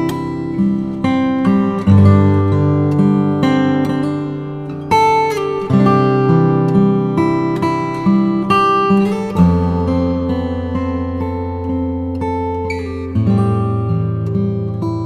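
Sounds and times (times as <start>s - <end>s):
acoustic guitar chords: 0.0s - 15.0s.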